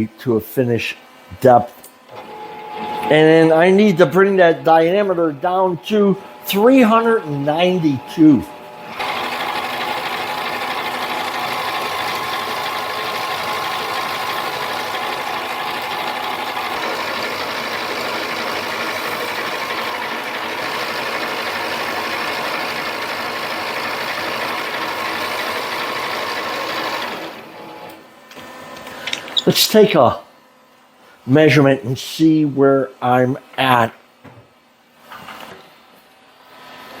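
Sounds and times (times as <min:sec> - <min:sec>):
lathe motor whirring: 0:02.0 - 0:29.2.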